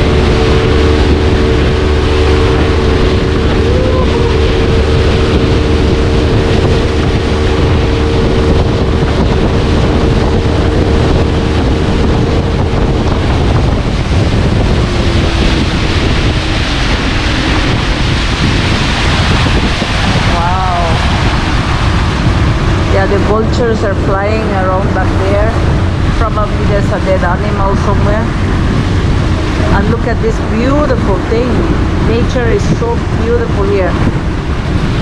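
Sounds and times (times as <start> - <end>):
boat motor humming: 0.0 - 35.0
water rushing past hull: 0.0 - 35.0
wind noise on microphone: 0.0 - 35.0.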